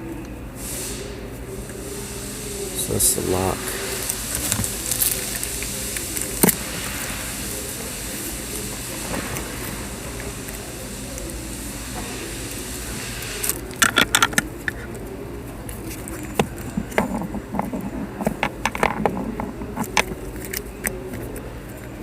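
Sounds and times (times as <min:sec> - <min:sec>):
small metal parts clicking: 0:13.4 - 0:14.9.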